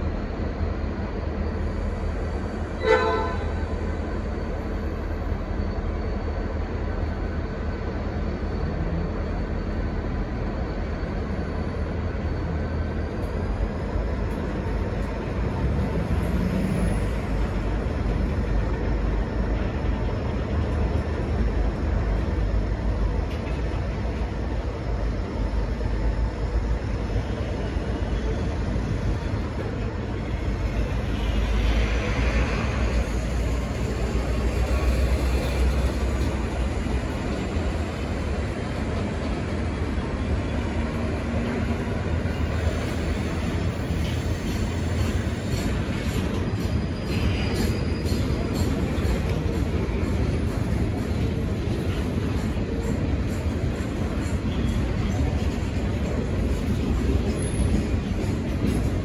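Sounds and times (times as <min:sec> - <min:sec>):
diesel locomotive rumbling: 0:00.0 - 0:59.0
locomotive horn toot: 0:02.8 - 0:03.6.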